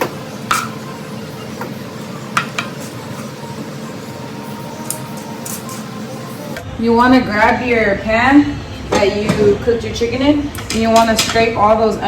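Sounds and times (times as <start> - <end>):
food being stirred in a pot: 0.0 - 6.5
steady background hum: 0.0 - 12.0.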